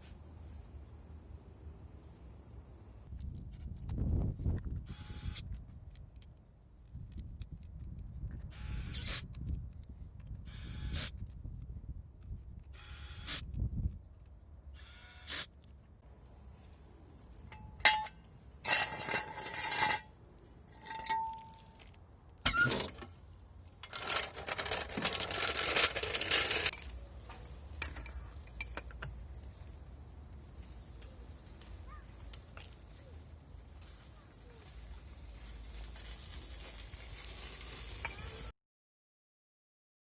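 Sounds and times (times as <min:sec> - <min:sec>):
tools clinking and scraping on metal: 0:17.4 - 0:20.1, 0:20.7 - 0:29.3.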